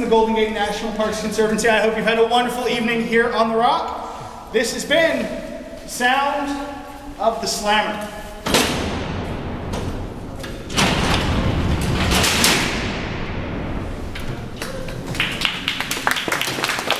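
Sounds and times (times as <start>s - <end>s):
steel cell doors sliding: 5.8s - 16.0s
steel doors slamming shut: 8.4s - 15.8s.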